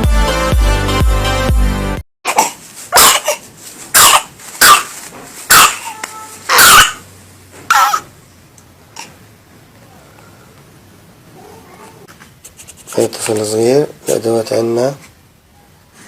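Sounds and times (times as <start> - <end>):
baby coughing: 2.3 - 4.9, 5.5 - 7.0, 7.7 - 8.1.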